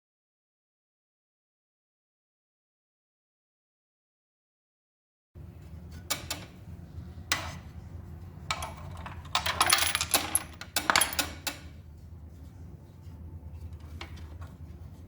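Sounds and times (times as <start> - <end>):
steady low hum: 5.4 - 15.0
small metal parts clinking: 8.5 - 11.6.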